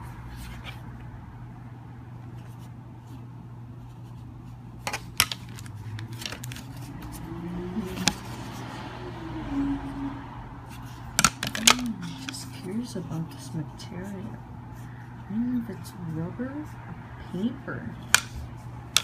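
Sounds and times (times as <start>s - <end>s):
steady low hum: 0.0s - 19.0s
plastic phone case clicking: 4.9s - 6.6s, 11.2s - 12.4s, 18.2s - 19.0s.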